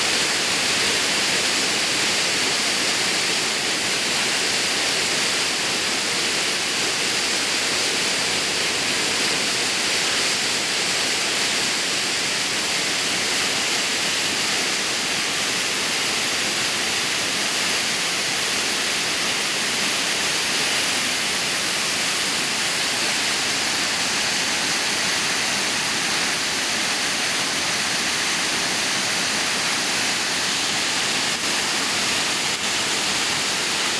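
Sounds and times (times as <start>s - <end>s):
waterfall rushing: 18.8s - 33.9s.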